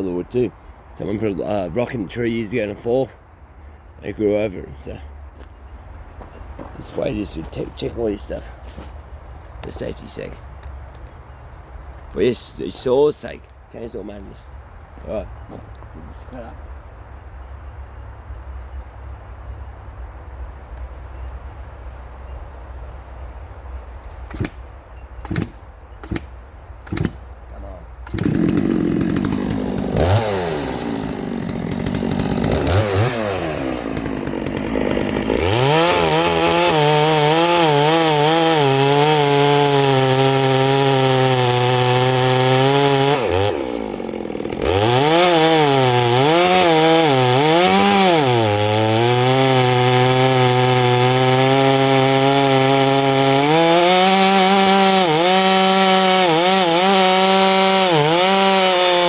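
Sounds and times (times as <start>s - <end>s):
chainsaw cutting log: 24.3s - 24.6s, 25.2s - 27.2s, 28.0s - 59.0s.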